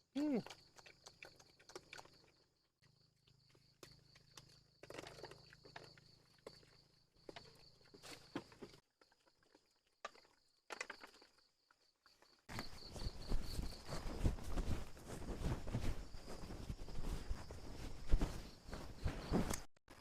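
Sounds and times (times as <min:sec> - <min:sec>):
insects chirping: 0:00.1 - 0:19.7
footsteps: 0:12.5 - 0:19.7
rustling: 0:12.5 - 0:19.7.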